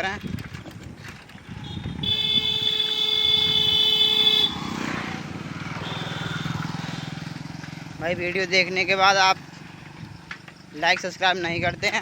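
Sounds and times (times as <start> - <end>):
motorcycle engine running: 0.0 - 12.0
vehicle horn: 1.5 - 4.7, 5.7 - 7.2.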